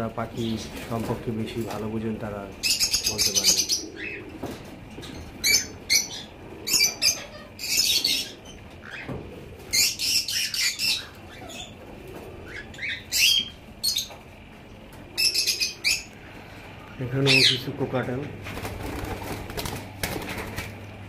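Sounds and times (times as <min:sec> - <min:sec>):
birds chirping and squawking: 0:00.0 - 0:20.7.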